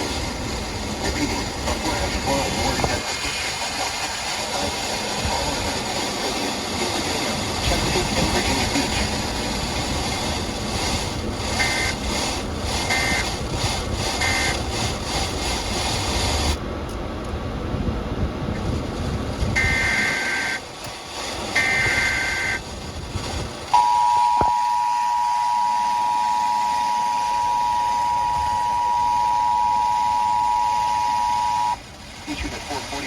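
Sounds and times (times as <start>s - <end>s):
radio static hissing: 0.0s - 16.7s, 18.4s - 33.0s
two-tone digital alert screeches: 19.6s - 20.6s, 23.8s - 31.8s.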